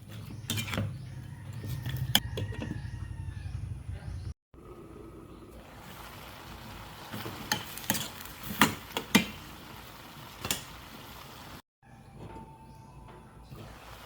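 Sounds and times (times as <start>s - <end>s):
food sizzling: 5.6s - 11.6s.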